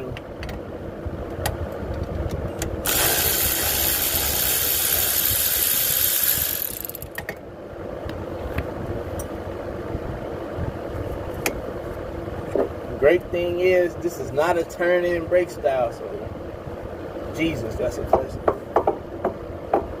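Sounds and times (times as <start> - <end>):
fan rumble: 0.0 - 20.0
cordless ratchet running: 2.8 - 7.2.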